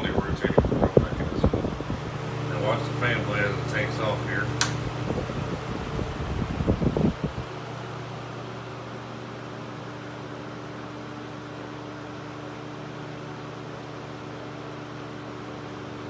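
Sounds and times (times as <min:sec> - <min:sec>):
box fan running: 0:00.0 - 0:16.0.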